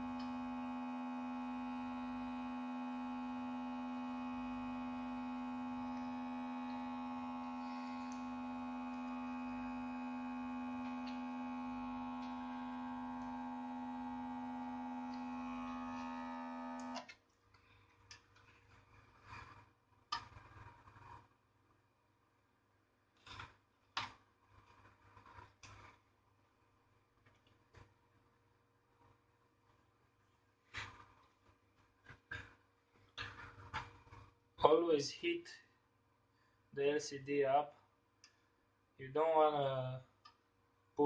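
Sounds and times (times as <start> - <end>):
hot-air blower humming: 0.0 - 17.0
faint clicks and taps: 27.2 - 28.0.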